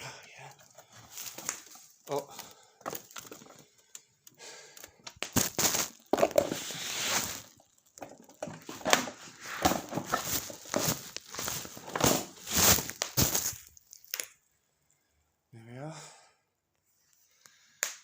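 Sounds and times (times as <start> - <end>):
packing material rustling: 0.4 - 14.4.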